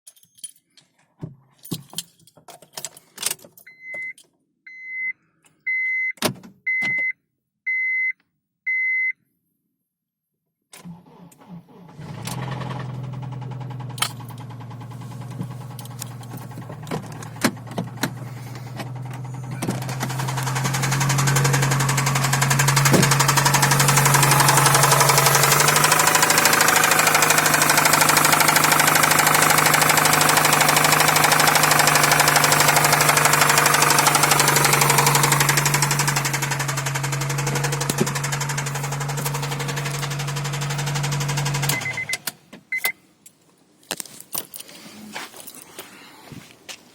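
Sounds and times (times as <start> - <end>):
short beeps: 3.7 - 9.2
car engine starting and idling: 10.8 - 42.4
engine knocking and chirping: 12.1 - 42.2.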